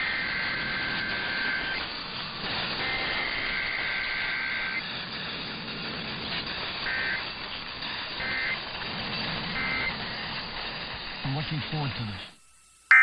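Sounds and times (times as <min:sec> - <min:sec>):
radio static: 0:11.2 - 0:13.0.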